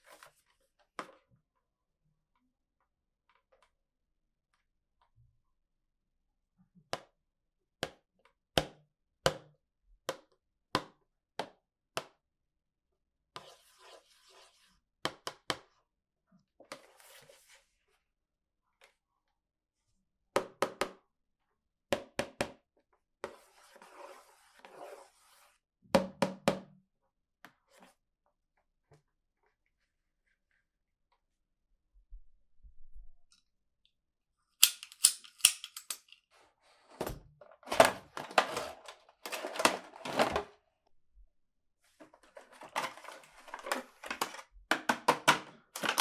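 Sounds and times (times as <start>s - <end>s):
plastic toy pieces clicking: 34.6s - 36.2s, 45.8s - 46.0s.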